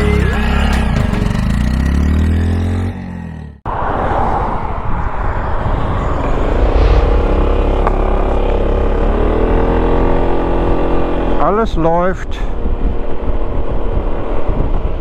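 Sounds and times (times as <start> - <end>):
road rumble: 0.7 - 11.4
wind: 1.0 - 15.0.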